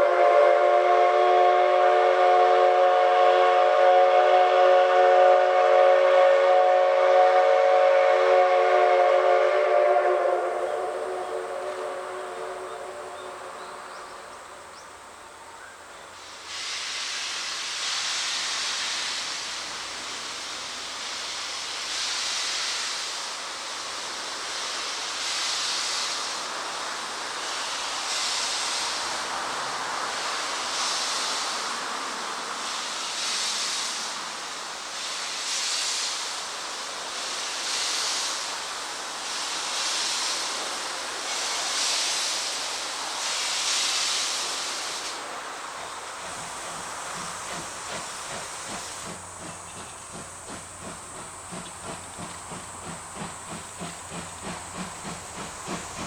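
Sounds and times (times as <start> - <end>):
train whistle: 0.0 - 14.2
steam hissing: 0.0 - 56.0
locomotive exhaust chuffs: 45.8 - 56.0.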